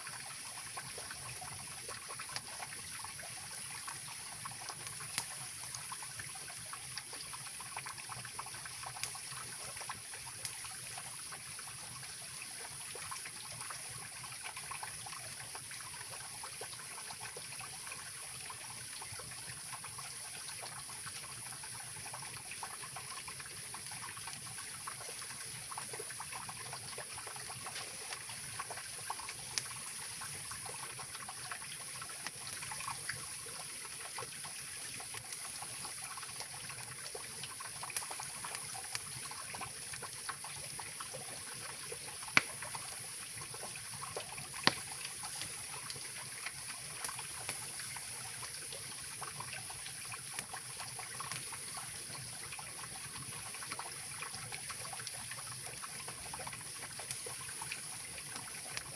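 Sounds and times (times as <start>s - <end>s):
campfire crackling: 18.4s - 58.9s.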